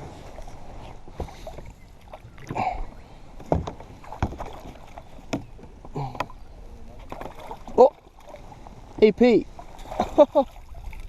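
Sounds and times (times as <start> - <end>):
faint water noise: 0.0 - 11.0
knocks against a kayak: 3.4 - 6.4.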